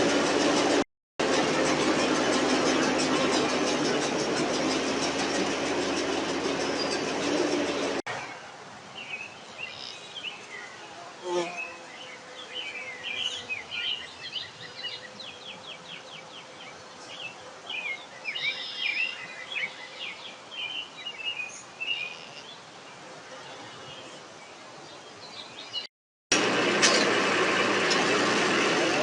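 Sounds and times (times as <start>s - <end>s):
steady outdoor hiss: 0.0s - 25.8s
birds chirping and singing: 9.0s - 22.6s.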